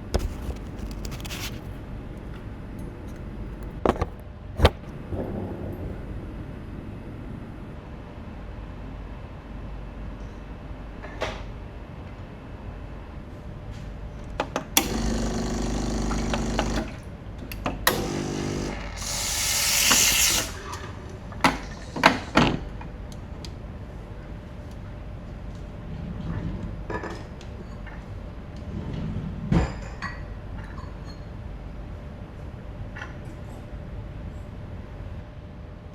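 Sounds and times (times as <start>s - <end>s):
coffee machine motor humming: 0.0s - 1.7s, 3.1s - 5.0s, 14.8s - 17.0s, 17.9s - 20.8s.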